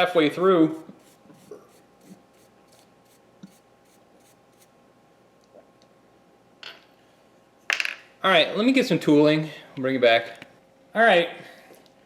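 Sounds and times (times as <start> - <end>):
faint steady hum: 0.0 - 12.0
light scratching strokes: 0.6 - 4.7.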